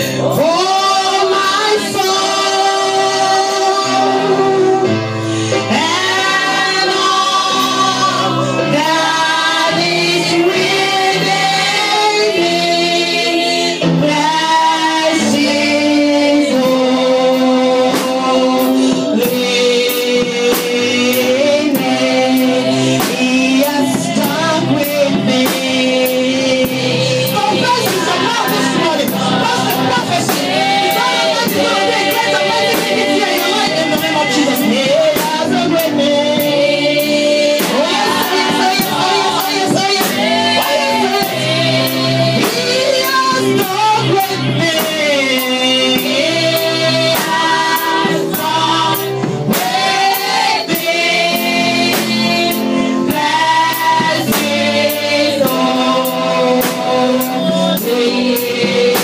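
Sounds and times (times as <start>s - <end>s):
band accompaniment: 0.0s - 59.0s
choir singing gospel: 0.0s - 59.0s
steady percussion beat: 18.0s - 59.0s.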